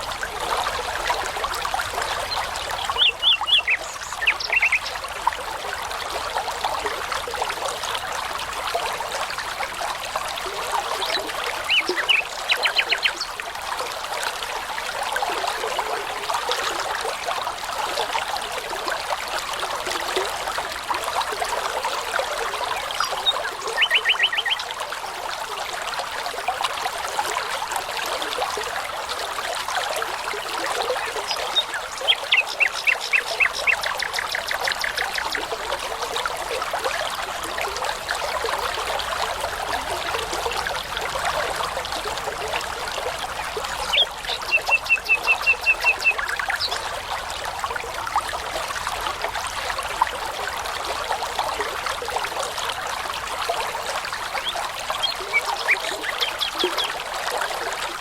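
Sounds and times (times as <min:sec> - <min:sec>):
brook running: 0:00.0 - 0:58.0
nightingale singing: 0:02.9 - 0:04.8.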